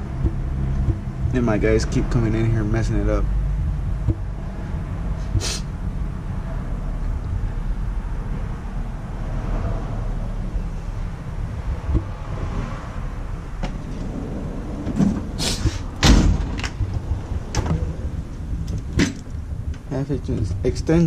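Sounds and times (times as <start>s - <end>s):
steady low rumble: 0.0s - 21.0s
metal knocks and rattles: 13.4s - 20.9s
metal drawers sliding: 13.6s - 16.8s.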